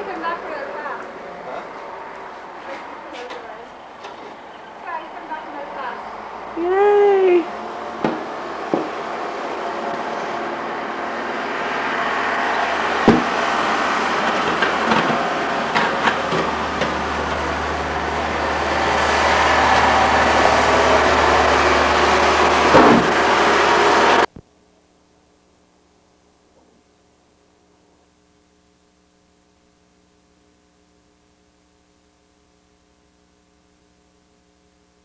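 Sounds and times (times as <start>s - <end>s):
knocks: 8.0s - 9.0s, 13.0s - 13.4s.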